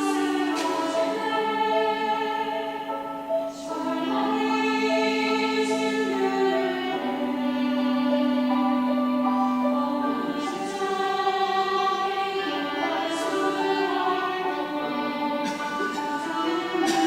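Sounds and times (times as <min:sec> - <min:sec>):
church choir singing: 0:00.0 - 0:17.0.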